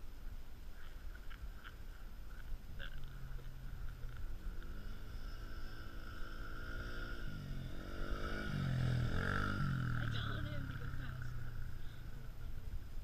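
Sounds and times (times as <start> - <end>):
quad bike engine revving: 2.8 - 12.4.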